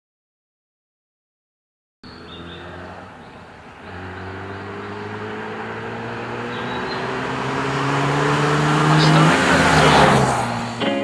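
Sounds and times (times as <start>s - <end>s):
car engine accelerating: 2.0s - 11.0s.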